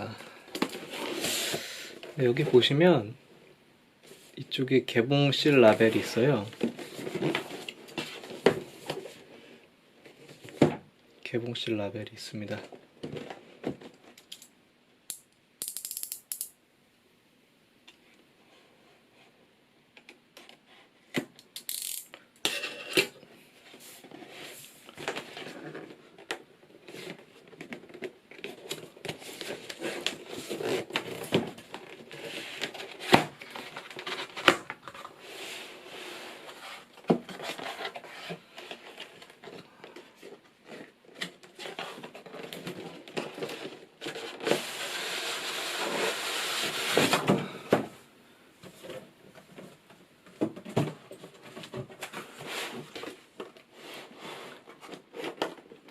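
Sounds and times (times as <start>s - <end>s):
cardboard rustling and scraping: 0.6s - 2.7s, 5.7s - 9.3s, 23.5s - 48.0s, 48.6s - 55.9s.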